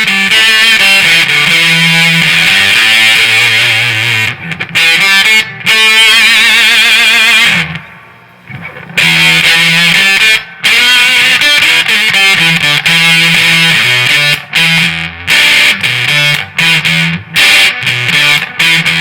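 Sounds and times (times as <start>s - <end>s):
distorted electric guitar: 0.0s - 19.0s.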